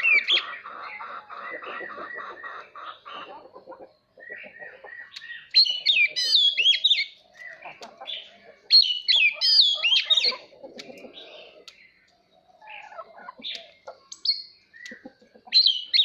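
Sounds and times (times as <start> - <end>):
soft bird chattering: 0.0 - 16.0
bird singing whistled phrases: 5.0 - 7.1.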